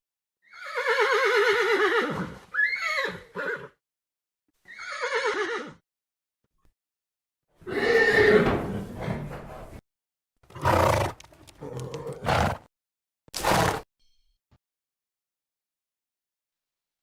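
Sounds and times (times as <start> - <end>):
horse whinnying: 0.4 - 3.8, 4.6 - 5.8, 7.6 - 9.8, 10.5 - 12.7, 13.4 - 13.8.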